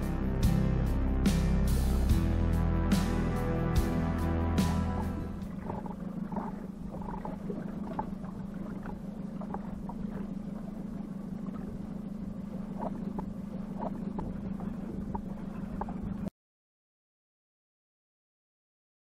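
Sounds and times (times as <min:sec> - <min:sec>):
outboard motor humming: 0:00.0 - 0:16.3.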